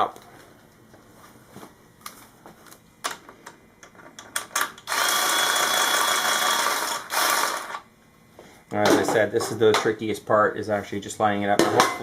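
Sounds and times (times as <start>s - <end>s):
loud steady whirring: 4.7s - 7.9s.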